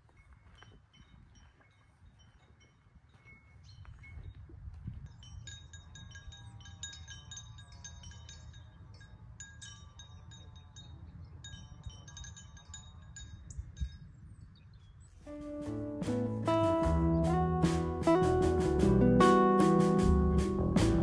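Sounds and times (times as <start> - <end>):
small metal chimes tinkling: 0.1 - 14.3.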